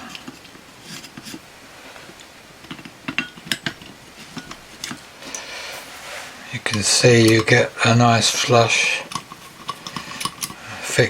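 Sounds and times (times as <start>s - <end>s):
metal screws clicking and clinking: 2.6s - 5.5s, 6.6s - 11.0s.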